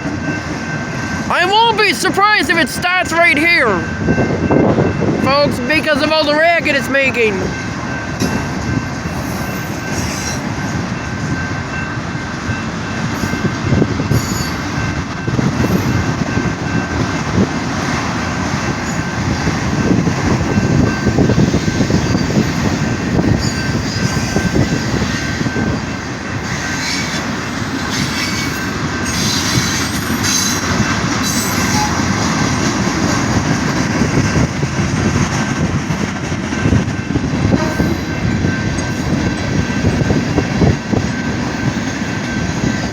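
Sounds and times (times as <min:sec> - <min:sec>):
train wheels clattering on rails: 0:07.5 - 0:42.9
wheel squeal on rail: 0:08.2 - 0:10.9, 0:14.1 - 0:16.1, 0:20.5 - 0:32.4.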